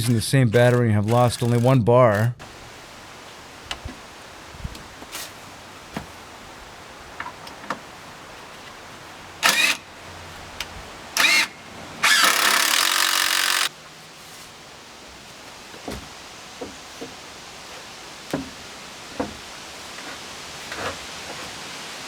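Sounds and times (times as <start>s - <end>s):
impact driver driving a screw: 0.0s - 1.8s, 11.2s - 13.7s.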